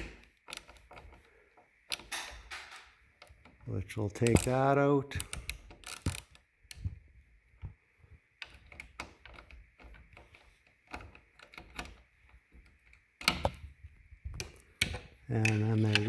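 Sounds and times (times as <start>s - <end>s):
socket ratchet clicking: 0.0s - 1.3s, 1.9s - 3.6s, 4.2s - 6.9s, 14.3s - 16.0s.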